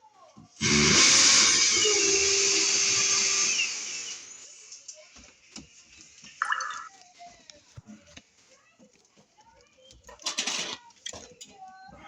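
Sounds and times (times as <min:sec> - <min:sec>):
power drill drilling: 0:00.6 - 0:04.8.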